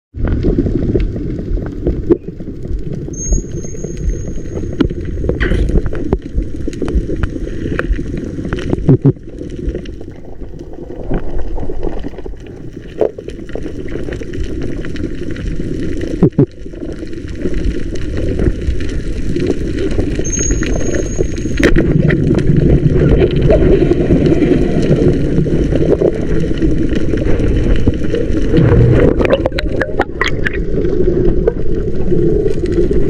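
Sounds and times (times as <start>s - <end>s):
underwater rumble: 0.1s - 33.0s
underwater clicks and crackles: 0.2s - 33.0s
high whistle: 3.2s - 4.8s, 20.2s - 21.6s.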